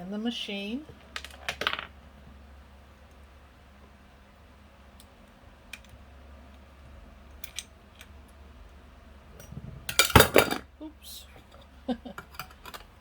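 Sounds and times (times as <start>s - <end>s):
steady low hum: 0.0s - 13.0s
light clicks of small metal parts: 4.9s - 6.7s, 7.3s - 8.4s.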